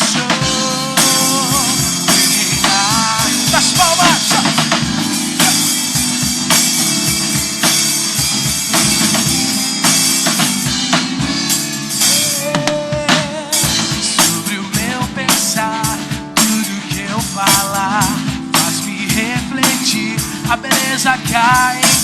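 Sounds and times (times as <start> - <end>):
band playing: 0.0 - 22.0
wavering melody line: 0.4 - 13.8.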